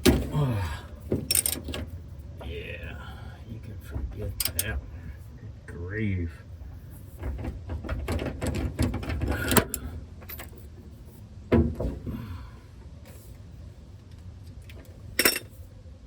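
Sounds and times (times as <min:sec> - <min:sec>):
objects clicking and rattling: 0:01.1 - 0:01.9.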